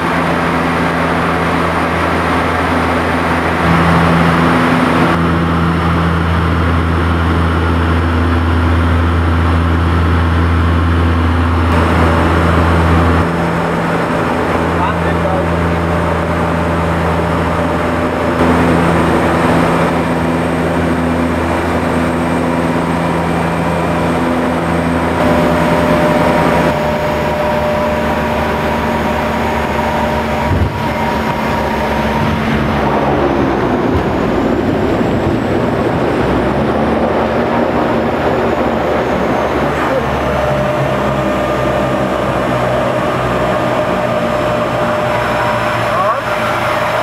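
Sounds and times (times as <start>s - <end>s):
plane engines droning: 0.0s - 47.0s.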